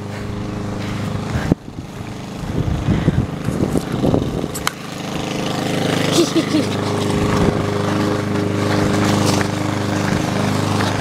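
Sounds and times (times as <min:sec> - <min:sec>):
motor humming: 0:00.0 - 0:11.0.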